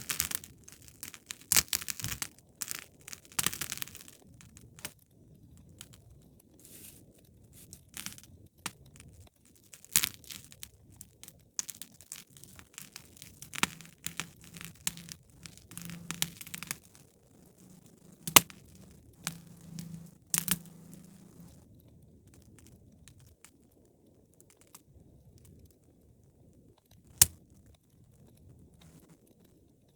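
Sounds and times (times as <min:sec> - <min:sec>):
wood fire crackling and popping: 0:00.0 - 0:04.9, 0:07.6 - 0:21.6
faint low hum: 0:13.6 - 0:21.9.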